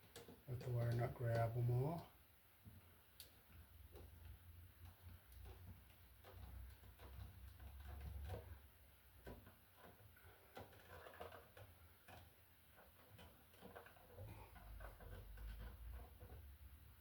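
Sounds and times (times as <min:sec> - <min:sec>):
wires clicking while handled: 0:00.0 - 0:02.2, 0:03.1 - 0:16.4
plastic wire nut twisting: 0:04.8 - 0:16.6.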